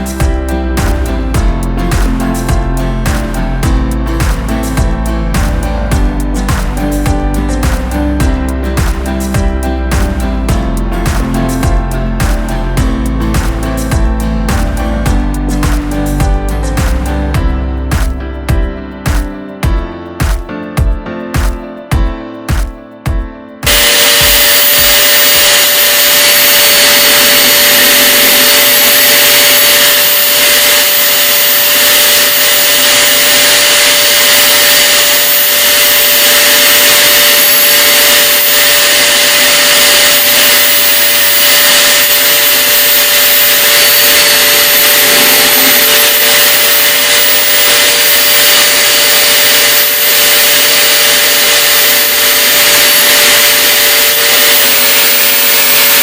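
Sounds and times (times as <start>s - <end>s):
electric drill motor whine: 23.7s - 56.0s.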